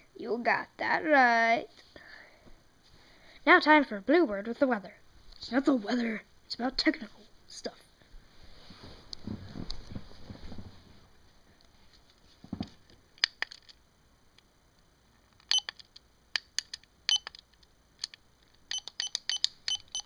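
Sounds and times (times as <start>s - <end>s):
sharp clicks: 15.3s - 20.0s.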